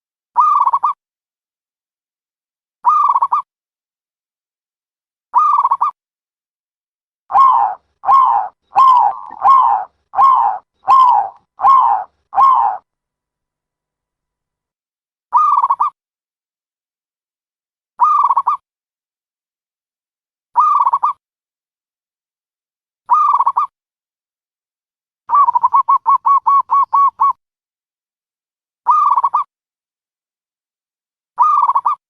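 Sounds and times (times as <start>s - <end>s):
dove cooing: 7.3s - 12.8s.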